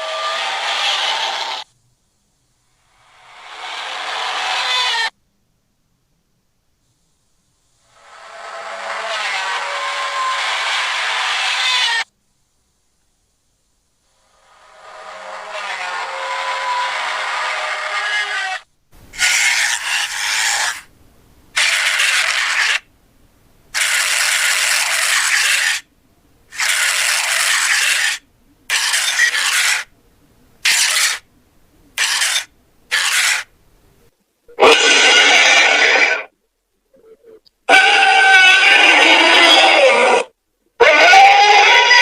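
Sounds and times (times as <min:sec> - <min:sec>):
harsh noisy hisses: 0:00.0 - 0:05.2, 0:06.8 - 0:22.9
layered pitched creature sound: 0:03.0 - 0:05.1, 0:08.0 - 0:12.0, 0:14.4 - 0:18.6, 0:34.5 - 0:36.3.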